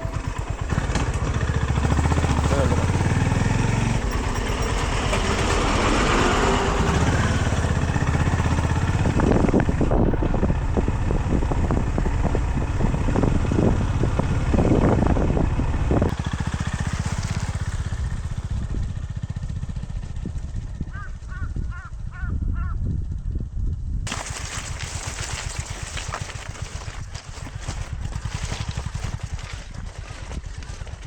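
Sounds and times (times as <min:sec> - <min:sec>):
single-cylinder engine thumping: 0:00.0 - 0:19.7.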